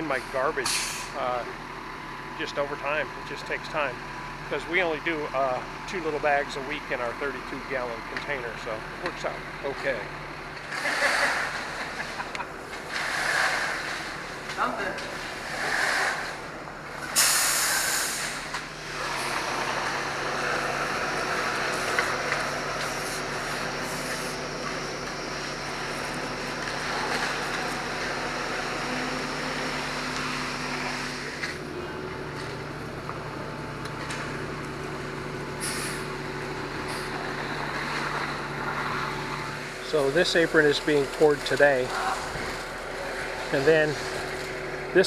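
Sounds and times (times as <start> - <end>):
truck engine running: 0.0 - 45.0
air hiss: 17.2 - 18.4.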